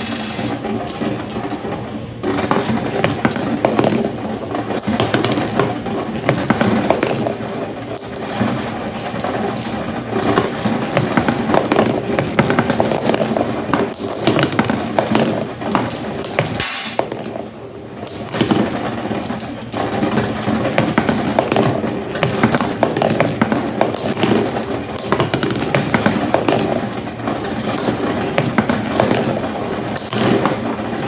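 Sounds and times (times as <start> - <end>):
marbles rolling down a track: 0.0 - 31.0
marbles clicking together: 18.0 - 31.0.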